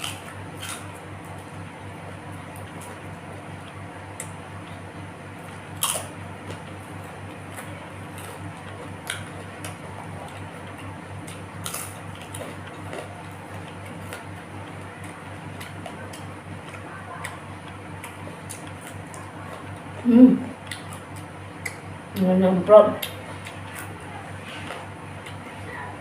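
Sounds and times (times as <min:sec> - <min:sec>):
chewing mouth clicks: 0:20.6 - 0:21.8.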